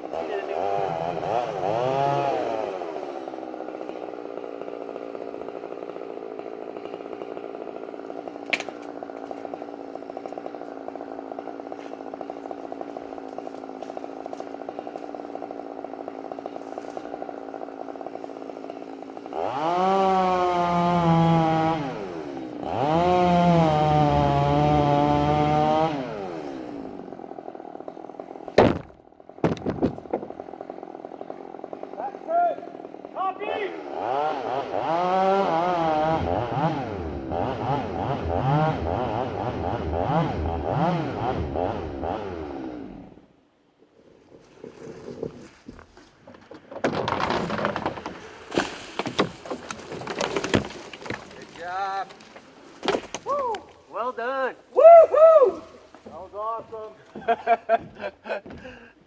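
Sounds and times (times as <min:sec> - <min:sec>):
chainsaw idling and cutting: 0:00.0 - 0:46.3, 0:46.9 - 0:59.0
small knocks: 0:28.6 - 0:30.4, 0:44.8 - 0:53.3.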